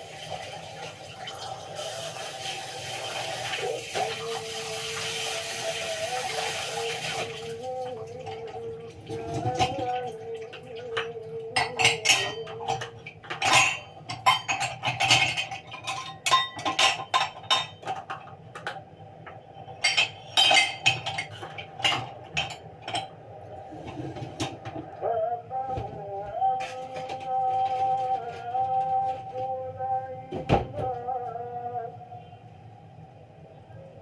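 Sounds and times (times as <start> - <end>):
dishes and cutlery clattering: 9.1 - 10.0, 10.8 - 18.8, 19.7 - 23.2.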